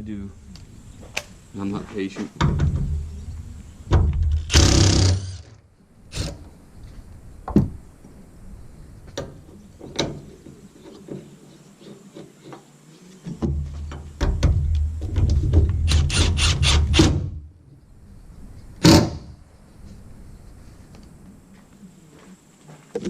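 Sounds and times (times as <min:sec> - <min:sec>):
short rattling burst: 0:04.3 - 0:06.4.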